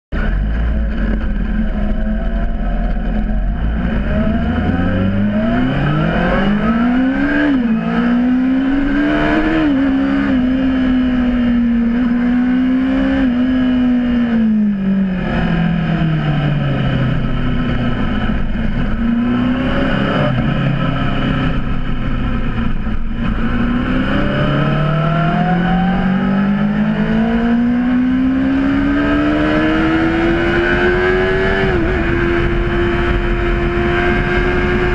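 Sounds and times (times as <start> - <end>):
motorcycle engine accelerating: 0.1 - 34.9.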